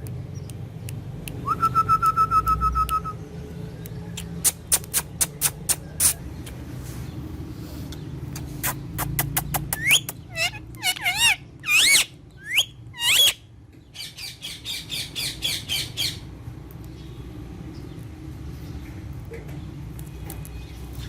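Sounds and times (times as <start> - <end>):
parrot squawking: 8.6 - 13.4.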